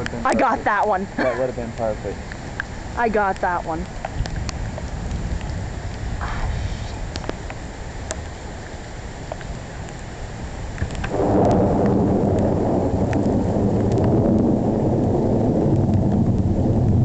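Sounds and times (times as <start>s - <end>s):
raindrops ticking: 0.0s - 6.2s, 7.0s - 17.0s
thunder rumbling: 10.8s - 17.0s.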